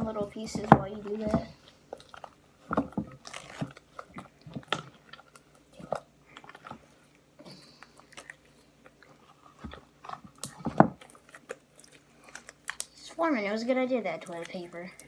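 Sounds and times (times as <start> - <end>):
slime squishing wet clicks: 10.4 - 13.1.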